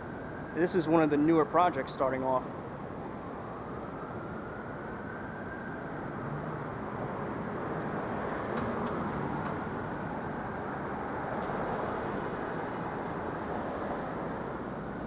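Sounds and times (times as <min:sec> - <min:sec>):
passing street traffic: 0:06.3 - 0:15.0.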